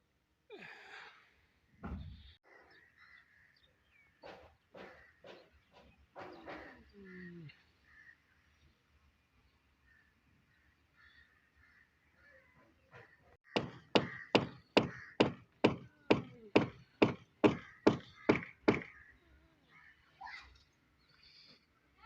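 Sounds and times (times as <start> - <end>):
sharp knocks: 13.5 - 19.0.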